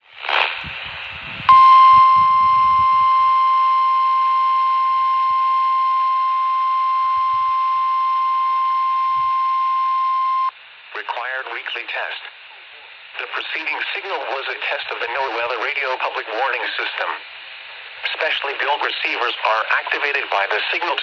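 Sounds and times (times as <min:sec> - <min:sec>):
radio hiss: 0:00.0 - 0:21.0
steady alarm tone: 0:01.5 - 0:10.5.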